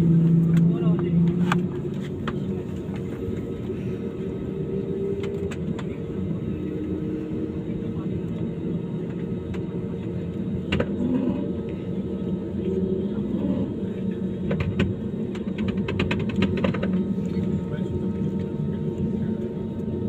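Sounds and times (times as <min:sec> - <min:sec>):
airliner engines rumbling: 0:00.0 - 0:20.0.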